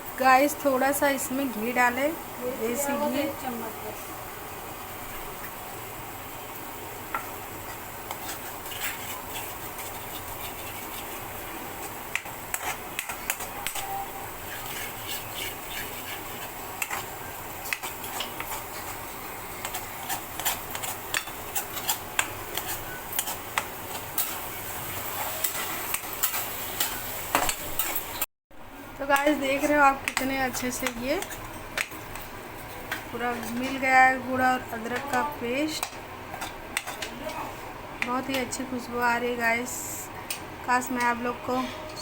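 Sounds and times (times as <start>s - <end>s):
utensil scraping a pan: 7.6s - 27.0s.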